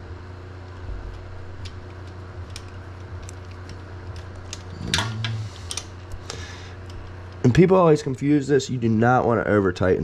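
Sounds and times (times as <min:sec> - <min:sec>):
steady low hum: 0:00.0 - 0:10.0
metal scrape: 0:04.7 - 0:05.9.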